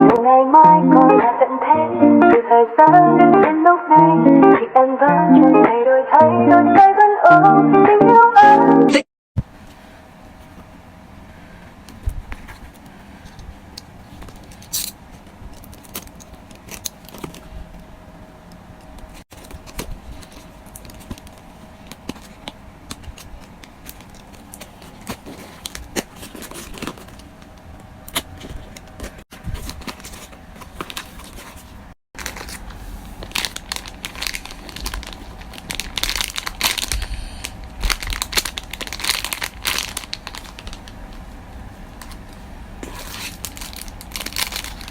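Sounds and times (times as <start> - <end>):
plastic wrapping crinkling: 19.4 - 27.6, 28.2 - 44.9.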